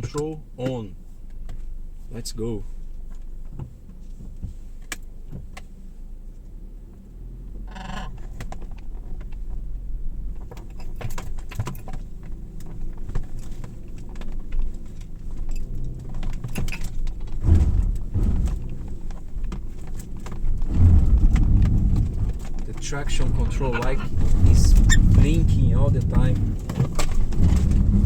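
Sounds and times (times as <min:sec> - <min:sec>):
car engine labouring: 0:00.0 - 0:28.0
stones and suspension knocking: 0:15.9 - 0:28.0.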